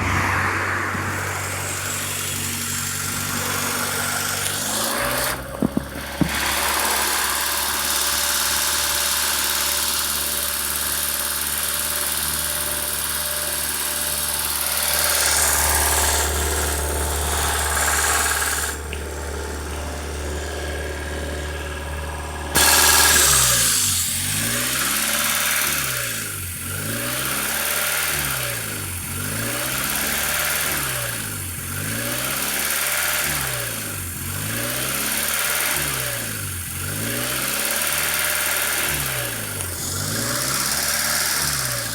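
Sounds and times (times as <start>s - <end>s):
car engine idling: 0.0s - 41.9s
vacuum leak hiss: 22.6s - 25.7s.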